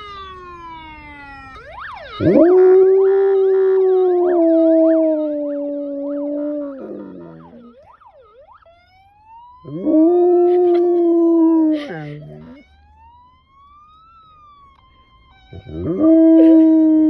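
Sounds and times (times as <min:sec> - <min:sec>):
siren sweeping and wailing: 0:00.0 - 0:17.0
dog howling: 0:02.2 - 0:07.8, 0:09.7 - 0:12.6, 0:15.6 - 0:17.0.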